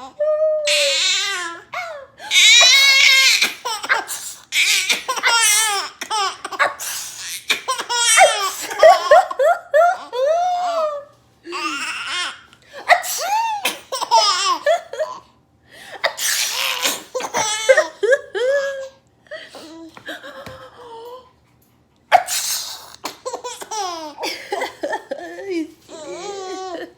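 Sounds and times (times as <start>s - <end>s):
baby laughing: 0.7s - 12.3s, 12.9s - 15.3s, 16.1s - 19.0s, 22.2s - 26.9s
adult pretend sneezes: 12.9s - 13.9s, 16.0s - 17.4s, 22.1s - 23.2s.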